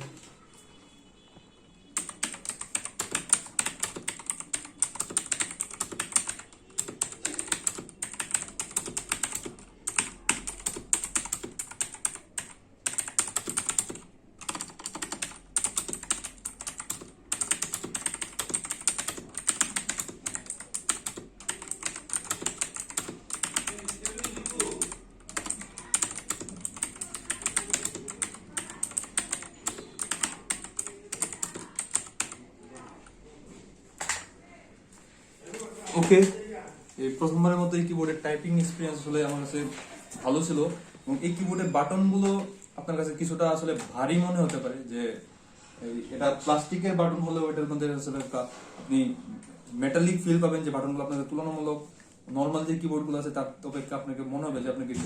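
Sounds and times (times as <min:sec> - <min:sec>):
clicky mechanical keyboard typing: 0:02.0 - 0:33.0.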